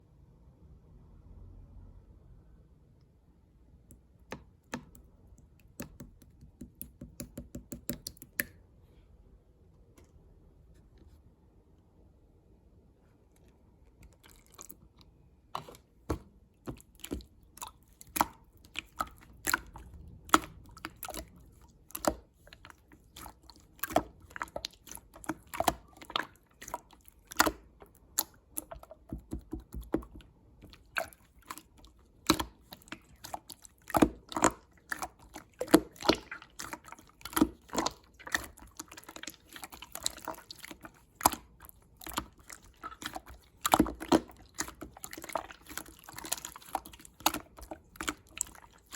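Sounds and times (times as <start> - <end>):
slime squished by hand: 14.0 - 48.9.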